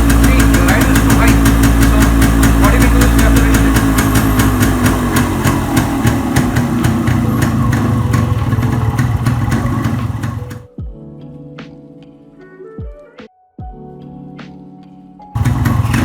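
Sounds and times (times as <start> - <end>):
motorcycle engine idling: 0.0 - 10.7, 15.4 - 16.0
soft background music: 10.6 - 16.0.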